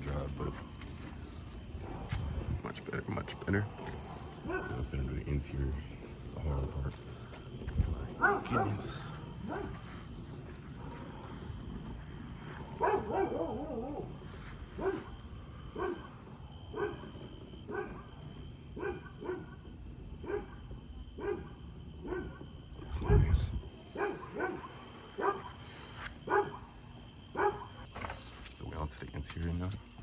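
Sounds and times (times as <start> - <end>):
dog barking: 3.4 - 5.1, 8.0 - 11.6, 12.4 - 19.6, 20.2 - 22.4, 23.0 - 27.9
dog whining: 12.8 - 14.2.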